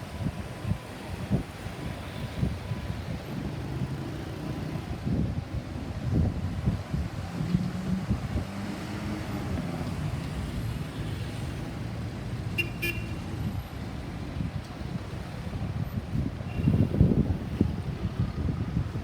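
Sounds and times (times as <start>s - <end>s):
vehicles passing: 0.0s - 19.0s
wind rumble on microphone: 0.0s - 19.0s.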